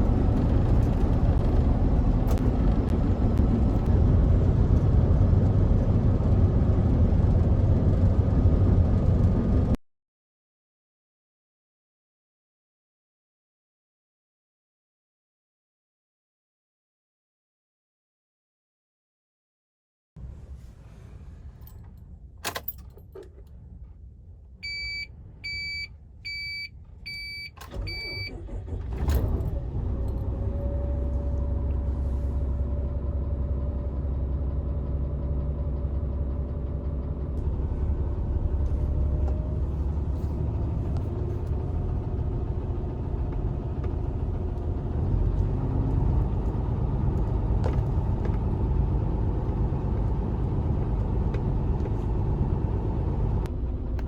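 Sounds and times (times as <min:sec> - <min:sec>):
short electronic beeps: 0:24.6 - 0:28.3
diesel engine cranking and running: 0:27.1 - 0:54.0.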